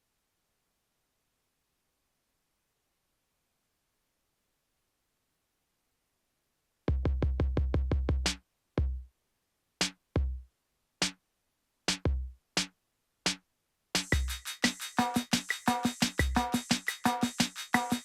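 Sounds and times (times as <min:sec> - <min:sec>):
synthesizer kick drum: 0:06.9 - 0:09.0, 0:14.0 - 0:18.0.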